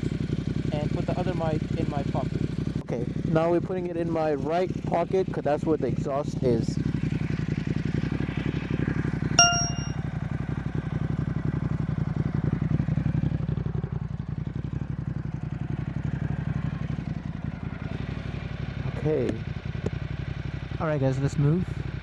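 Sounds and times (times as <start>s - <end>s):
motorcycle engine idling: 0.0s - 22.0s
sharp metallic ding: 9.4s - 10.0s.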